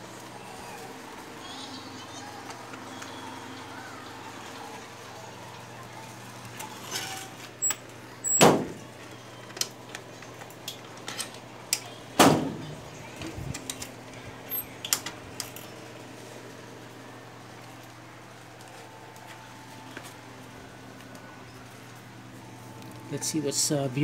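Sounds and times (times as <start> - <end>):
metal hardware clicking and rattling: 13.5 - 15.8.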